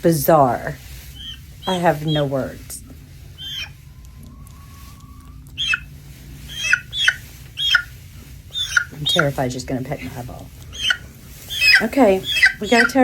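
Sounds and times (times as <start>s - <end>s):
hen calling: 0.0s - 13.0s.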